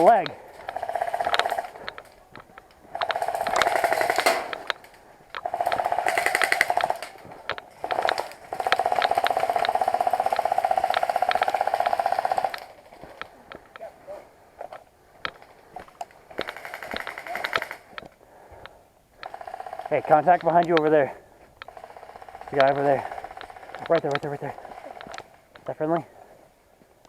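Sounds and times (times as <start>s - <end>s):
airsoft rifle firing bursts: 0.0s - 2.0s, 2.9s - 12.9s, 16.3s - 17.9s, 19.3s - 20.6s, 21.7s - 25.4s.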